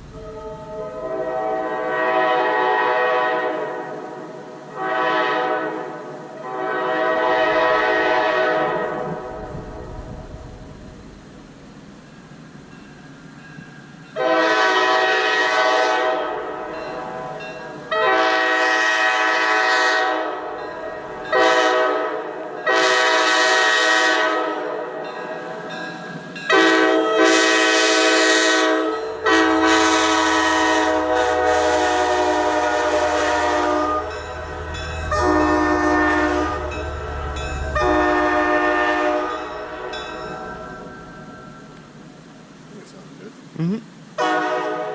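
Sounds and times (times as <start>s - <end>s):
multi-chime air horn blasts: 26.4s - 41.5s.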